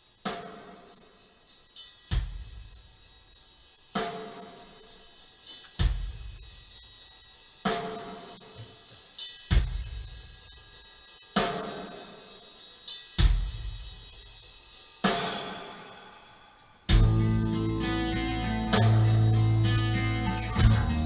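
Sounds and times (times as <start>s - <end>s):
hi-hat ticks: 0.0s - 15.5s, 16.9s - 21.0s
kick and cymbal crashes: 0.0s - 21.0s
rock music drum kit: 16.9s - 21.0s.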